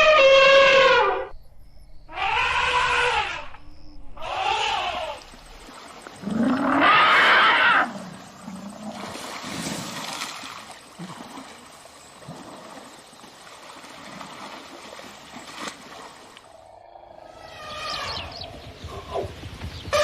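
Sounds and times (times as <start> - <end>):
elephant loud call: 0.0 - 1.3, 2.1 - 3.5, 17.2 - 19.3.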